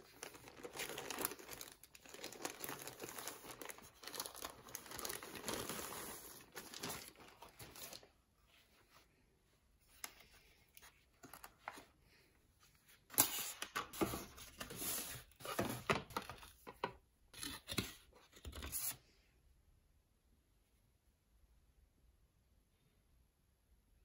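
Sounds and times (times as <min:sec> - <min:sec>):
packaging rustling and tearing: 0:00.0 - 0:08.1.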